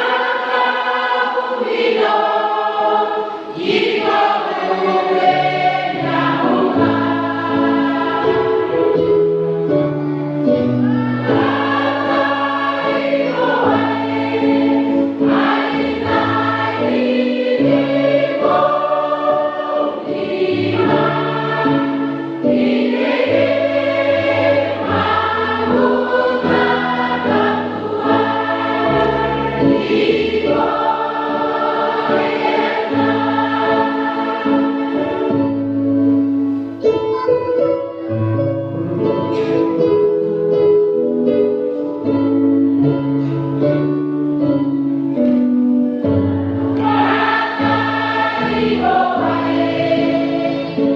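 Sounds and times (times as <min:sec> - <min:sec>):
choir singing: 0:00.0 - 0:09.4, 0:10.5 - 0:36.2, 0:46.2 - 0:50.9.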